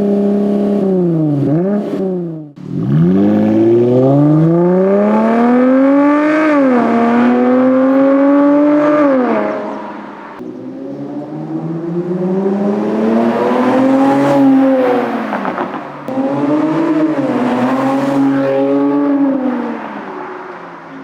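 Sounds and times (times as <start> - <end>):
car engine revving through exhaust: 0.0 - 19.8.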